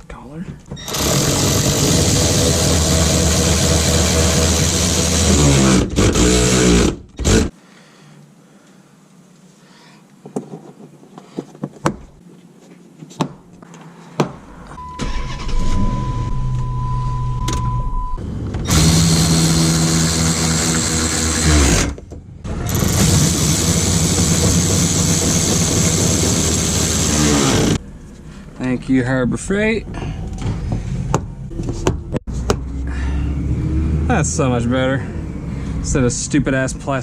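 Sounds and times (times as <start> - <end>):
steady ignition tone: 14.8 - 20.6
car engine starting and running: 14.8 - 28.7, 30.8 - 36.9.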